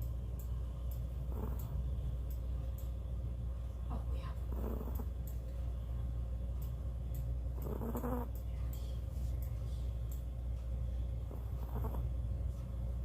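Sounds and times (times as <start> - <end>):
steady low hum: 0.0 - 13.0
dog snoring: 1.3 - 1.8, 4.5 - 5.1, 7.6 - 8.4, 11.3 - 12.2.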